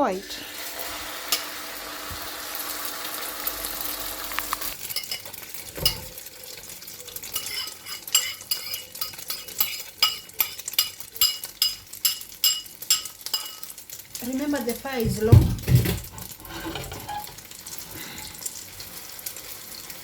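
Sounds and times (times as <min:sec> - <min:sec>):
egg sizzling in hot oil: 0:00.0 - 0:15.0, 0:16.1 - 0:20.0
metal utensil clinking on pan: 0:04.8 - 0:06.2, 0:07.2 - 0:13.8, 0:16.2 - 0:17.4.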